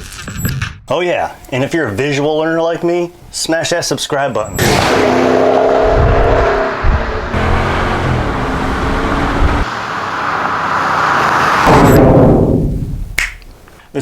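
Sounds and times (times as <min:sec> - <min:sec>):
truck engine revving: 0:04.5 - 0:12.9.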